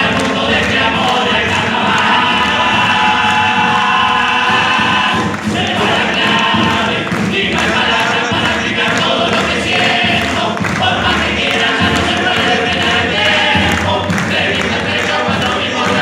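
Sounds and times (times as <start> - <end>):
many voices singing together: 0.0 - 16.0.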